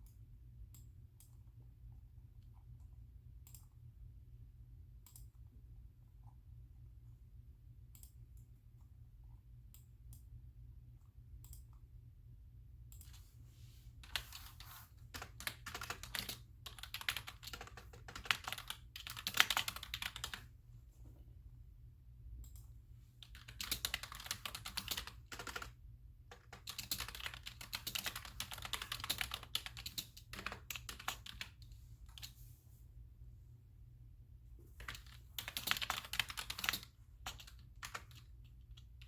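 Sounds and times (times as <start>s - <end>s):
typing on keyboard: 14.0s - 20.5s, 22.4s - 32.4s, 34.8s - 39.0s.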